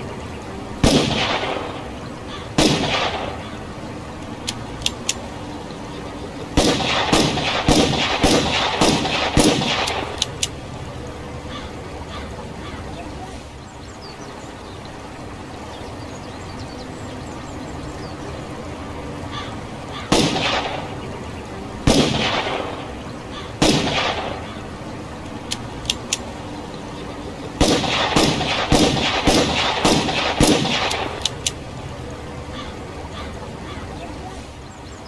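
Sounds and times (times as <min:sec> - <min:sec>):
revolver gunshots: 0:00.8 - 0:03.6, 0:06.6 - 0:10.6, 0:20.0 - 0:21.0, 0:21.8 - 0:24.7, 0:27.6 - 0:31.6.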